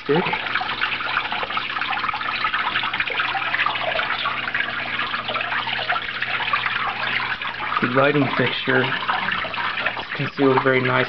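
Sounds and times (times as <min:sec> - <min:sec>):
small waterfall splashing into pool: 0:00.0 - 0:11.0.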